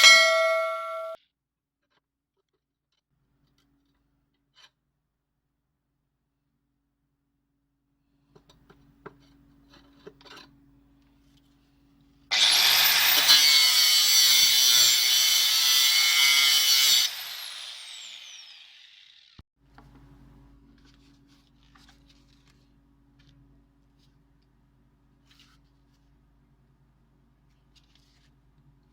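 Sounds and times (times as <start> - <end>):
angle grinder whining: 12.3 - 19.4.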